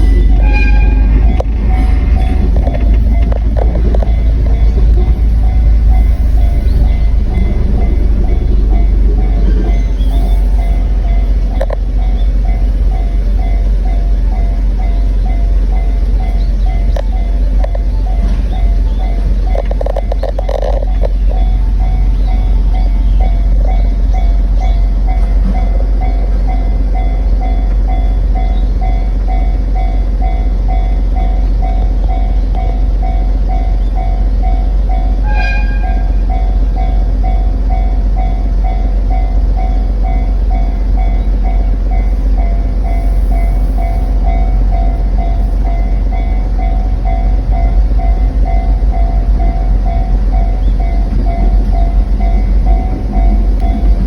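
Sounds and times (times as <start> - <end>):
brief high tone: 0.0 - 3.4
level crossing alarm ringing: 0.0 - 54.0
low rumble of rail cars: 0.0 - 54.0.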